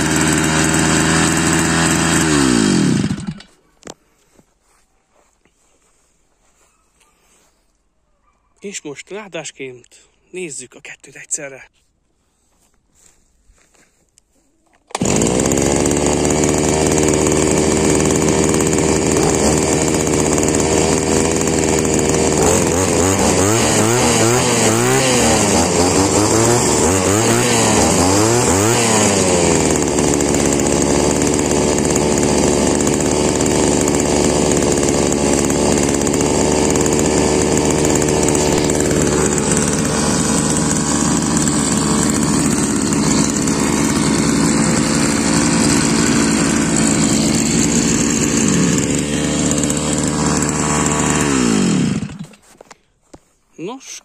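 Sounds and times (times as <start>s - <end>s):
brushcutter engines revving: 0.0s - 4.3s, 14.8s - 52.8s.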